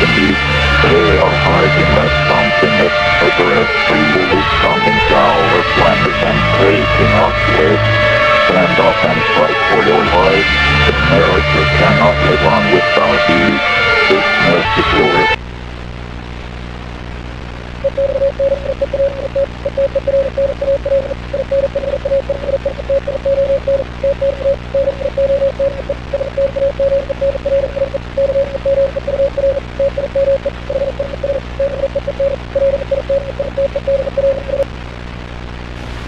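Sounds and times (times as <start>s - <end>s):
radio hiss and hum: 0.0s - 36.0s
morse code beeps: 17.8s - 34.6s.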